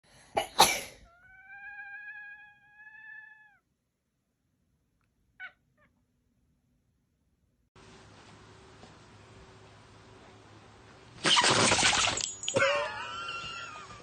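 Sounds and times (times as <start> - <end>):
cat sneezing: 0.4 - 1.1
cat meowing: 1.0 - 3.6.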